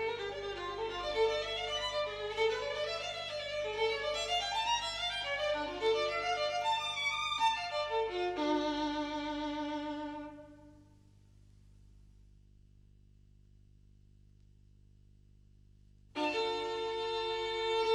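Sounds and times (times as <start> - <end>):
violin melody: 0.0 - 10.8, 16.2 - 17.9
low electrical hum: 0.0 - 17.9.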